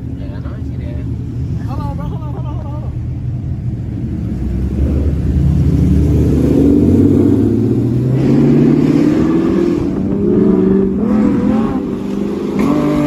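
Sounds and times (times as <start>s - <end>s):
car engine accelerating hard: 3.5s - 13.0s.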